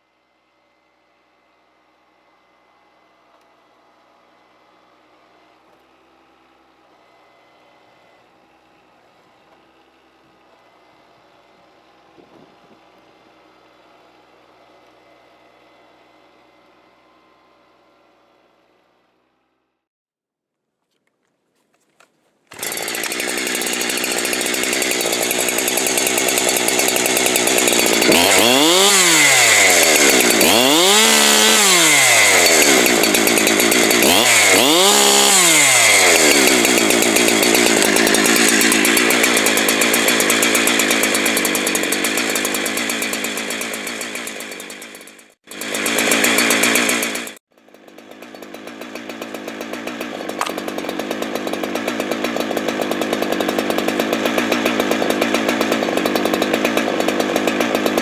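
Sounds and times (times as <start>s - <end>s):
chainsaw engine running hard: 22.5s - 58.0s.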